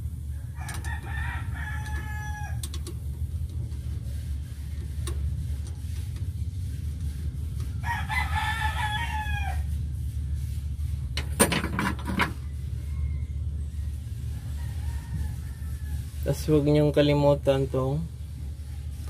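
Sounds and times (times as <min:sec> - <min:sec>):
steady low hum: 0:00.0 - 0:19.0
rooster crowing: 0:00.3 - 0:02.6, 0:07.8 - 0:09.8, 0:12.5 - 0:16.3.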